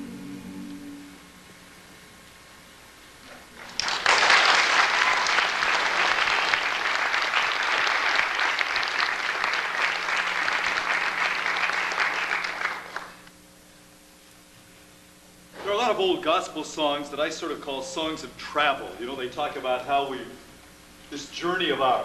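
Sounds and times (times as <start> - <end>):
audience applauding: 3.5 - 13.3.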